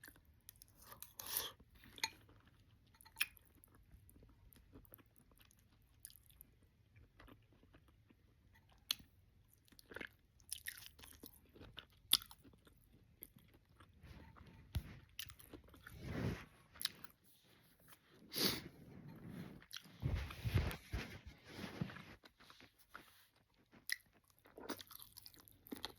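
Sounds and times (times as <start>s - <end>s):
wet chewing and lip smacks: 1.9s - 15.9s, 22.2s - 25.9s.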